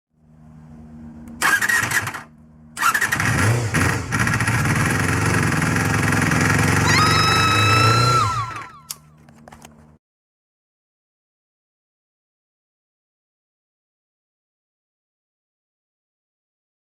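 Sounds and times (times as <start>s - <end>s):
engine running loudly: 0.2s - 9.8s
engine cranking: 1.4s - 9.1s.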